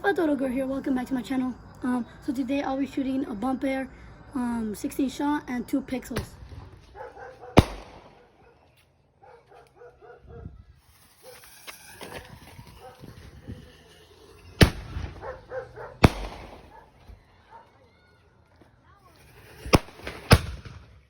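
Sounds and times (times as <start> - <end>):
firework bangs: 6.1 - 8.6, 10.7 - 17.6, 19.0 - 21.0
dog barking: 6.9 - 7.6, 8.2 - 10.5, 15.2 - 16.0, 16.7 - 17.8.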